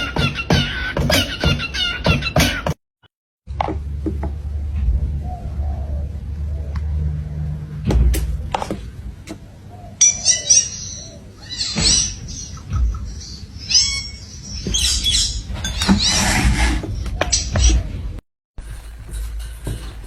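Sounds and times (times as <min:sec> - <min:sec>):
sharp knocks: 0:07.8 - 0:09.4
parrot chirping and squawking: 0:09.4 - 0:18.0.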